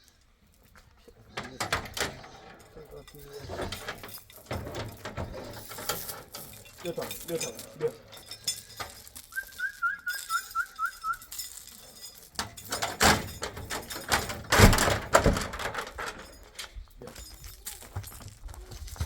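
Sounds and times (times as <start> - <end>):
rustling and knocking: 0.8 - 9.4, 11.3 - 19.0
short whistled notes: 9.3 - 11.3.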